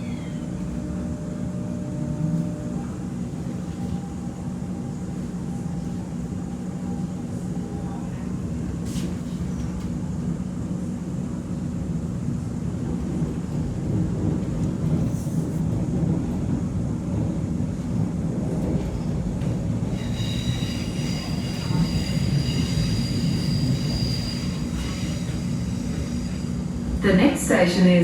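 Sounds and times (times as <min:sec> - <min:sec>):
train wheel squeal: 0:00.0 - 0:00.8, 0:19.8 - 0:26.8
train wheels rumbling on rail: 0:00.0 - 0:28.0.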